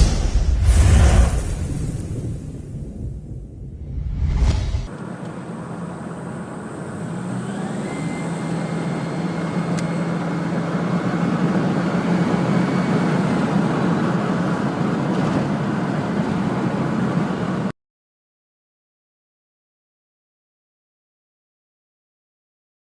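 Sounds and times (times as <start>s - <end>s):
diesel engine running: 4.9s - 17.7s
high turbo whistle: 6.6s - 10.5s.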